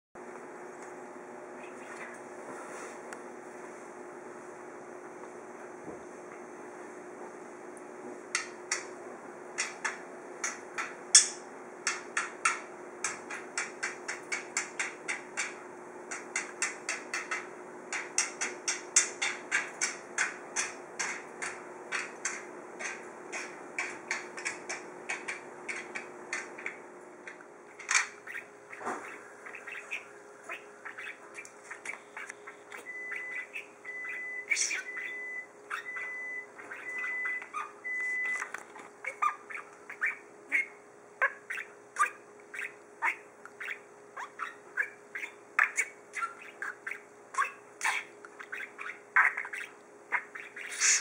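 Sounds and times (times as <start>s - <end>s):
bird beak tapping hard surface: 11.9s - 26.8s.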